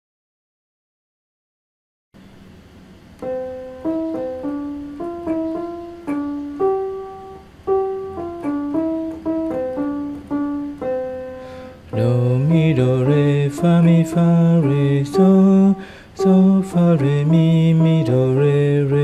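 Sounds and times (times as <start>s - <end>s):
piano melody on keyboard: 3.1s - 19.0s
person singing solfege: 11.6s - 19.0s.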